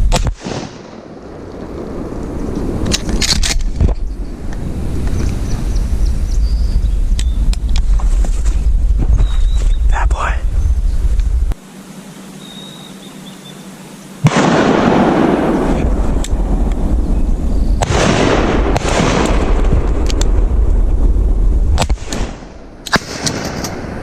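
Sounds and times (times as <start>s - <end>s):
wind buffeting microphone: 0.8s - 11.6s, 14.6s - 24.0s.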